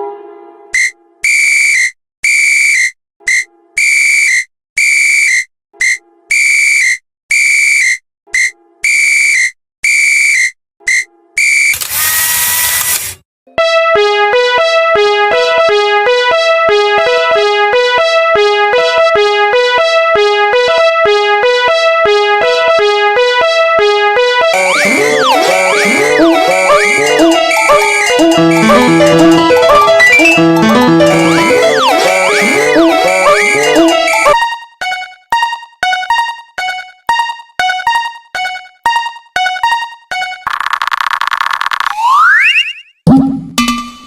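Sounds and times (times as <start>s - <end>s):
synthesizer music with beat: 13.5s - 35.1s
railroad crossing alarm dings: 13.6s - 34.4s.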